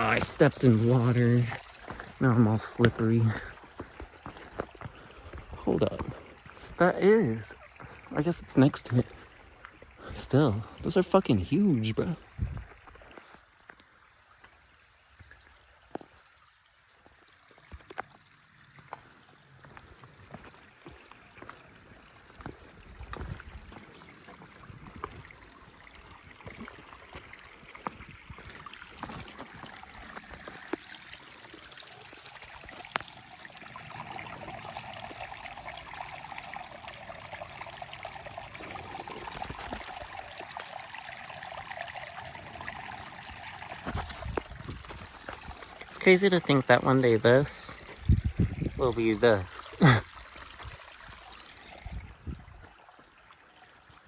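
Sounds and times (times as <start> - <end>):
creek trickling over rocks: 0.0 - 54.0.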